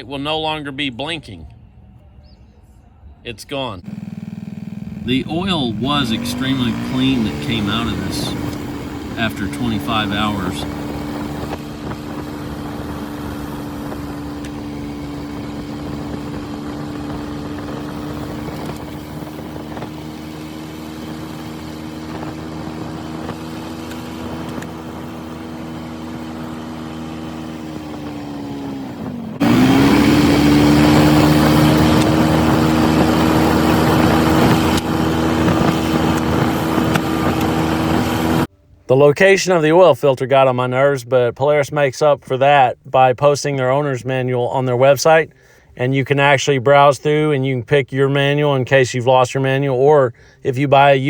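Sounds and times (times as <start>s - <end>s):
atv engine idling: 3.8s - 38.5s.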